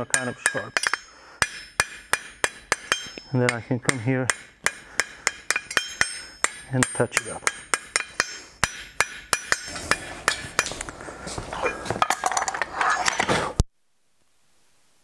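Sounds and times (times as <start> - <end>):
hammer ringing on anvil: 0.0 - 10.8.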